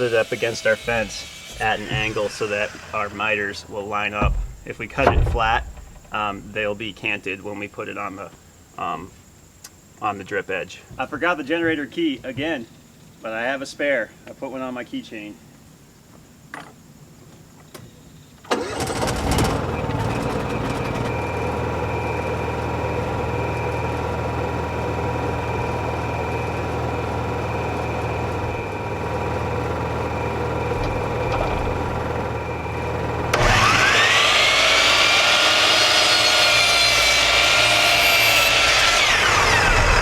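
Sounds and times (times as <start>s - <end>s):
power miter saw whining: 0.0s - 7.0s, 18.5s - 40.0s
generator engine running: 0.1s - 7.0s, 18.5s - 40.0s.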